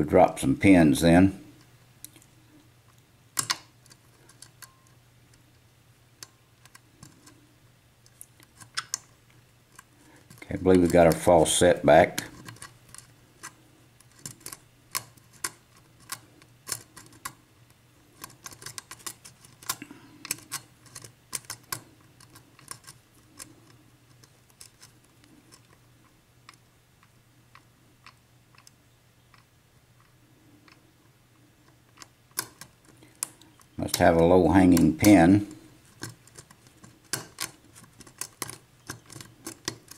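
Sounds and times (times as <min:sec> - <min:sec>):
lock pick clicking: 0:03.4 - 0:05.0, 0:31.7 - 0:33.7, 0:36.0 - 0:39.9.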